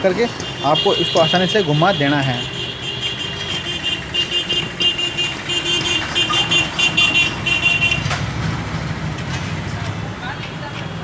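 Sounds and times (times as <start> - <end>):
metal squeaking: 3.2 - 8.2.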